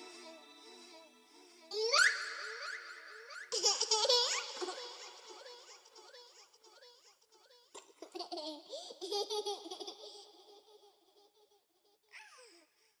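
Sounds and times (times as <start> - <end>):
child squealing: 1.7 - 4.5
child giggling: 3.5 - 6.8, 7.8 - 11.4.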